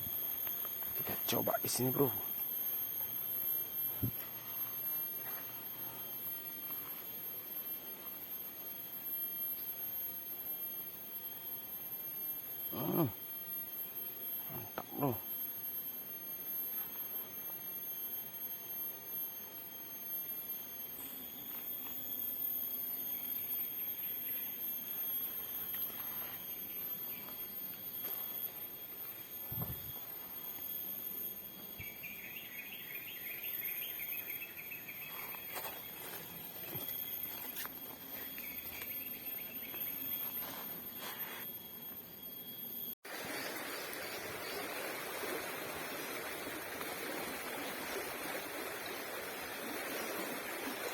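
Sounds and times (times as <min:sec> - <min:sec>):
insects droning: 0:00.0 - 0:50.9
even rush like flowing water: 0:43.1 - 0:50.9.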